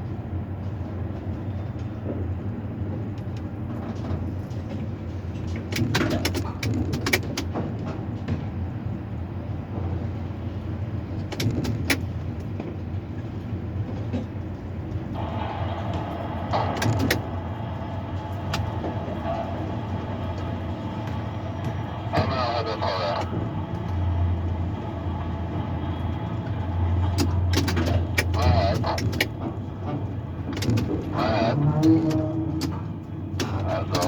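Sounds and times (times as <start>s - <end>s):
sharp clicks and knocks: 5.4s - 7.9s, 11.2s - 12.7s, 27.0s - 31.1s
low machine hum: 14.5s - 34.0s.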